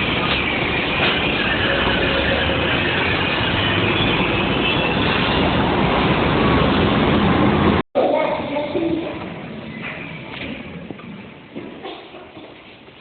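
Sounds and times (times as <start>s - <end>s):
train rumbling on rails: 0.0s - 7.8s.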